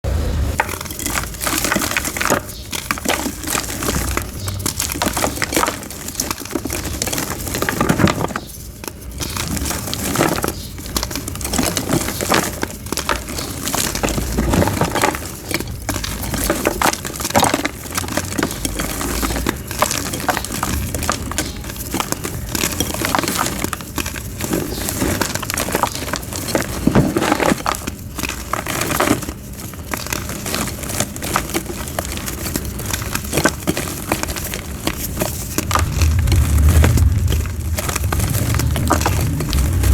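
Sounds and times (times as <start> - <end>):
chalk being crushed crackling: 0.6 - 39.9.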